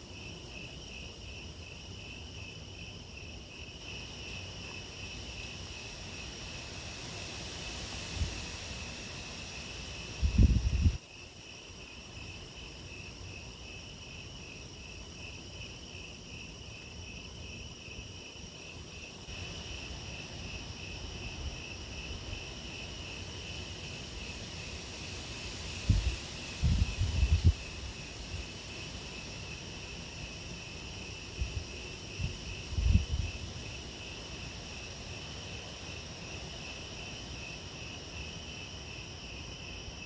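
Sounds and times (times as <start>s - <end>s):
crickets chirping: 0.0s - 40.0s
wind buffeting microphone: 10.0s - 11.0s, 25.7s - 28.5s, 31.4s - 33.7s.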